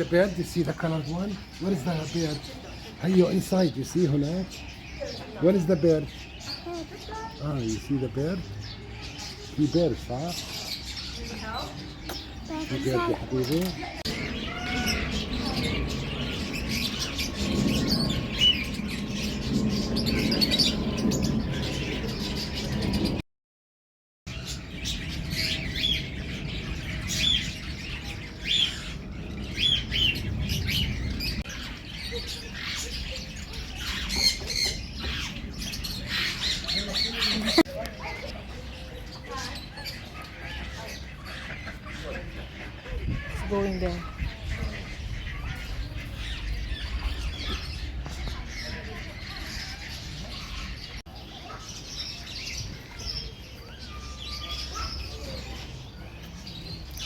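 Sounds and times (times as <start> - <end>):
birds squawking and chirping: 0.0 - 23.2, 24.3 - 57.0
steady low rumble: 14.0 - 23.2, 44.0 - 50.8.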